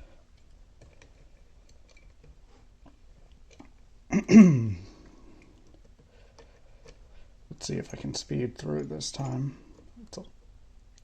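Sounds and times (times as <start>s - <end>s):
man groaning: 4.1s - 4.9s.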